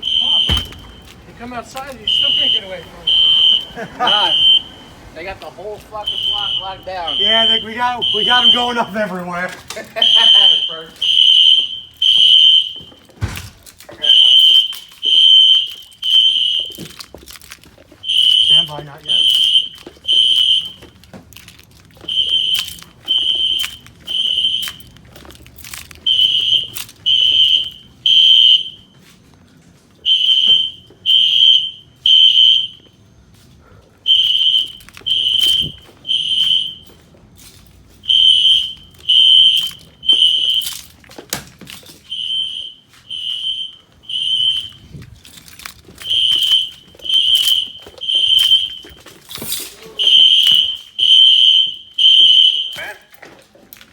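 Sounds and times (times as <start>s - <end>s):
high-pitched fire alarm horn blasts: 0.0s - 5.1s, 5.9s - 9.4s, 10.0s - 13.2s, 13.9s - 17.0s, 18.0s - 20.9s, 22.0s - 24.9s, 26.1s - 29.1s, 30.0s - 33.2s, 34.1s - 37.0s, 38.0s - 40.9s, 42.1s - 45.0s, 46.0s - 49.1s, 50.0s - 53.0s.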